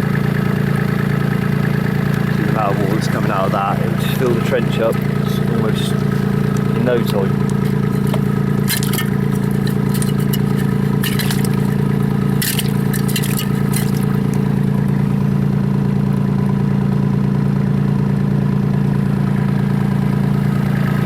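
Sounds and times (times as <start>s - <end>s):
excavator diesel engine running: 0.0s - 21.0s
sharp clicks and scrapes: 5.9s - 14.6s.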